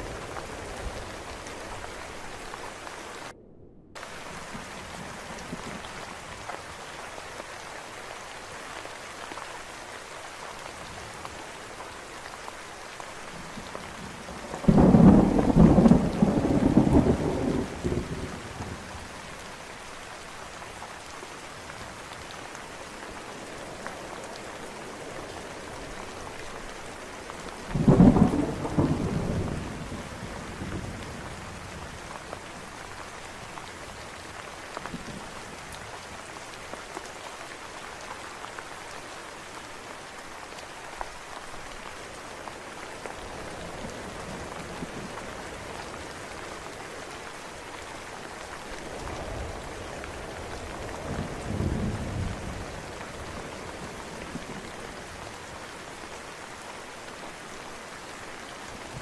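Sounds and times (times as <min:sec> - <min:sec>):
steady rain: 0:00.0 - 0:03.4, 0:04.0 - 0:59.0
thunder rumbling: 0:00.0 - 0:06.5, 0:13.4 - 0:19.3, 0:27.6 - 0:32.0.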